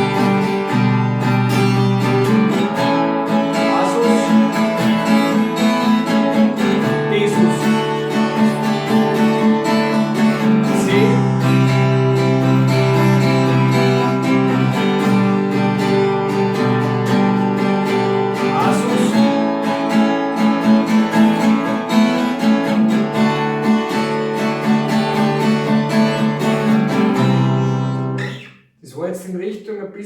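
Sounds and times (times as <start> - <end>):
acoustic guitar strumming: 0.0 - 28.7.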